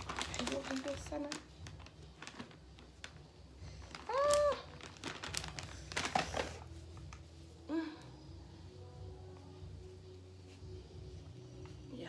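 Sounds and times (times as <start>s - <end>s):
rustling and crinkling handling: 0.0s - 7.7s.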